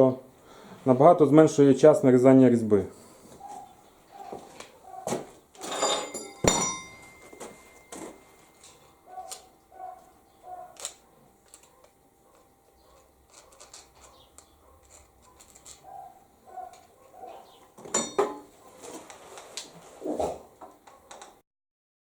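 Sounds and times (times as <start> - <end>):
metal tools clicking and knocking: 5.6 - 18.5.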